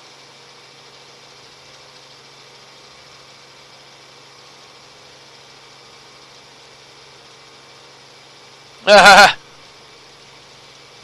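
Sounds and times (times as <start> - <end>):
helicopter cabin noise: 8.9 - 9.4.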